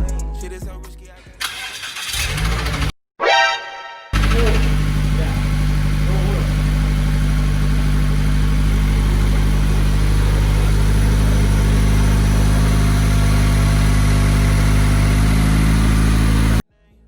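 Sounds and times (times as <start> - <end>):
car engine idling: 1.4 - 2.9, 4.2 - 16.6.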